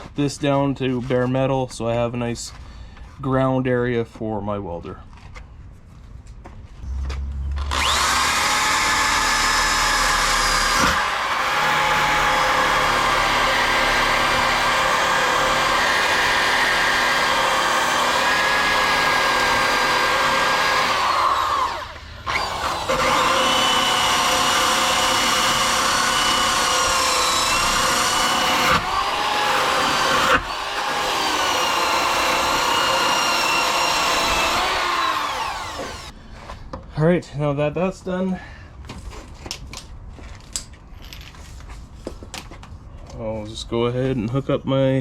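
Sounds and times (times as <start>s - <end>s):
power tool grinding metal: 7.5s - 36.1s.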